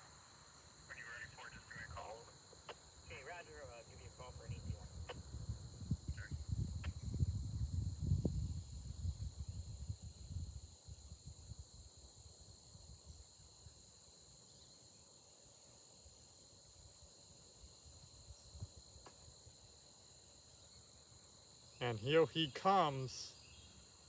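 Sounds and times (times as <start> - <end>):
insects chirring: 0.0 - 24.0.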